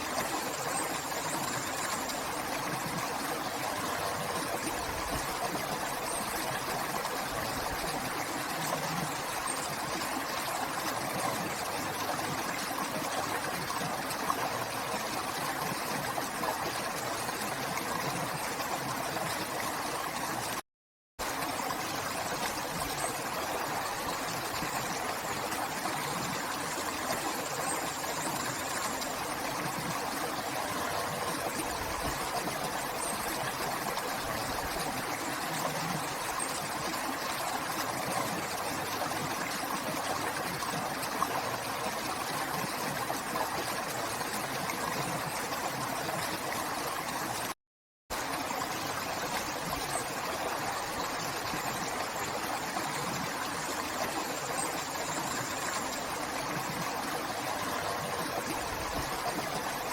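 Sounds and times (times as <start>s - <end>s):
river flowing: 48.2s - 59.9s.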